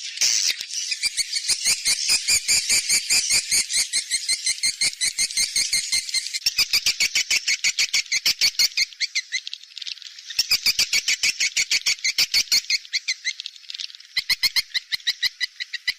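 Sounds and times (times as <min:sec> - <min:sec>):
swiftlet twittering chirps: 0:00.0 - 0:09.4, 0:14.1 - 0:15.9.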